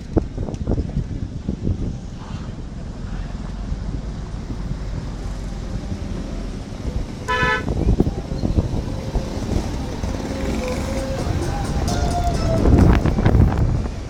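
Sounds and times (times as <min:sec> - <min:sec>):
low rumble: 0:00.0 - 0:14.0
vehicle horn toot: 0:07.3 - 0:07.8.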